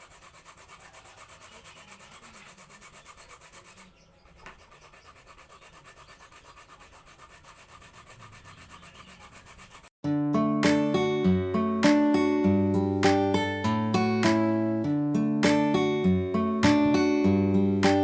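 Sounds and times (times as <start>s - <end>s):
rhythmic scraping strokes: 0.0s - 9.9s
plucked guitar music: 10.0s - 18.0s.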